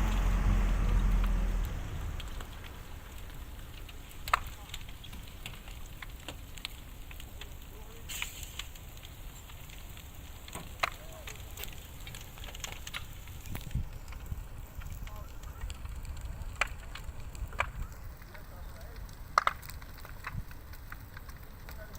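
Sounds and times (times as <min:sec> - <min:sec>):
fire crackling and popping: 0:00.0 - 0:21.9
steady low rush of fire: 0:00.0 - 0:21.9.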